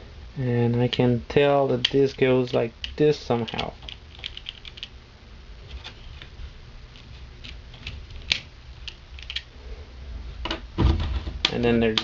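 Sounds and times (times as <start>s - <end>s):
light clicks of small parts: 1.8s - 4.9s.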